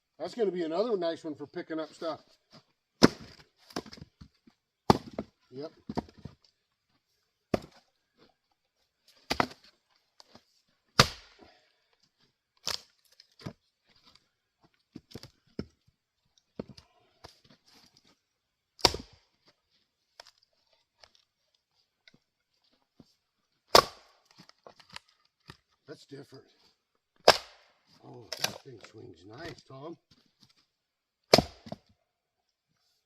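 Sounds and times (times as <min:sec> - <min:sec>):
axe splitting wood: 0:03.0 - 0:04.0, 0:04.9 - 0:05.3, 0:05.9 - 0:06.3, 0:07.5 - 0:07.9, 0:09.2 - 0:09.7, 0:10.9 - 0:11.5, 0:12.6 - 0:13.5, 0:18.8 - 0:19.2, 0:23.7 - 0:25.6, 0:27.2 - 0:28.6, 0:31.3 - 0:31.9.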